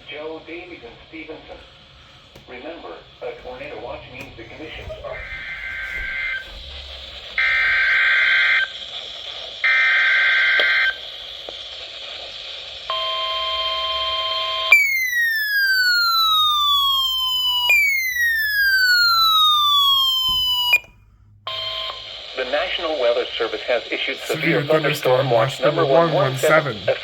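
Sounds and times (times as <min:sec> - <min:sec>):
radio hiss: 0:00.0 - 0:09.6, 0:10.9 - 0:12.9, 0:22.0 - 0:27.0
falling siren-like alarm tone: 0:14.8 - 0:20.9.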